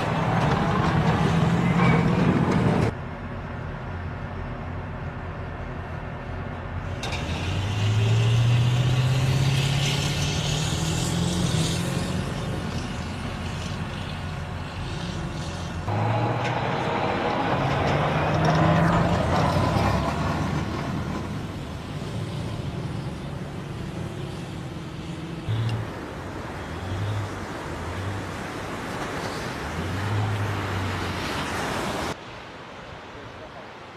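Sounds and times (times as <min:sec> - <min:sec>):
heavy vehicle engine revving: 0:14.7 - 0:21.8.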